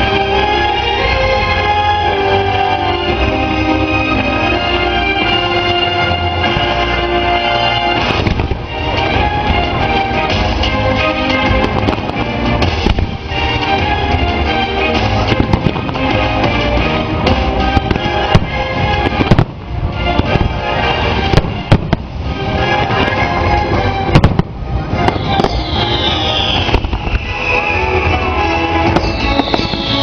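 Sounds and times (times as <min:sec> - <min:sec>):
loud show music: 0:00.0 - 0:30.0
fireworks bangs: 0:05.1 - 0:30.0
falling firework whistle: 0:25.0 - 0:30.0.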